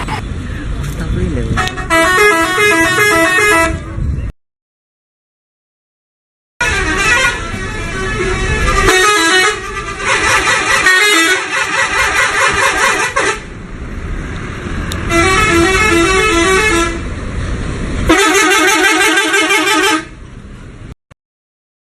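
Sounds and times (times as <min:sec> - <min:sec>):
bus horns playing tunes: 0:00.0 - 0:00.2, 0:01.6 - 0:03.9, 0:06.6 - 0:13.5, 0:15.0 - 0:17.1, 0:18.1 - 0:20.2
bus engine noise: 0:00.0 - 0:04.3, 0:06.6 - 0:21.0.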